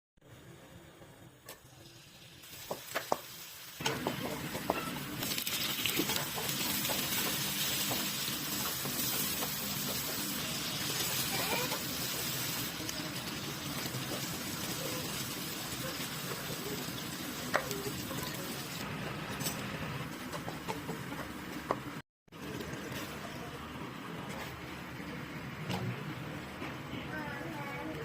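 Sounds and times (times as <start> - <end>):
food sizzling in a pan: 1.4 - 19.3.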